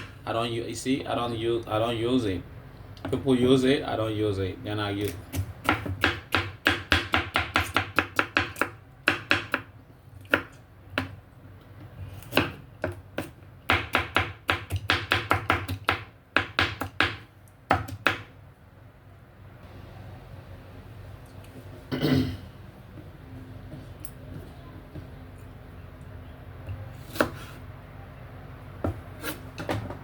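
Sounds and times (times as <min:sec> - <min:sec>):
knife chopping on cutting board: 0:05.0 - 0:09.7, 0:27.1 - 0:27.5.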